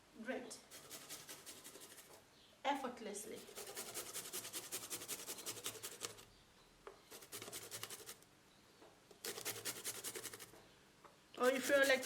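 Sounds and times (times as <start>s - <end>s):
hand grater rasping: 11.4s - 12.0s.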